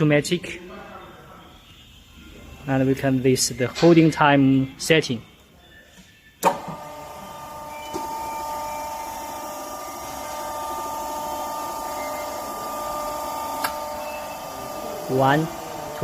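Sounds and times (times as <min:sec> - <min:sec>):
hydraulic pump motor humming: 0:06.4 - 0:16.0.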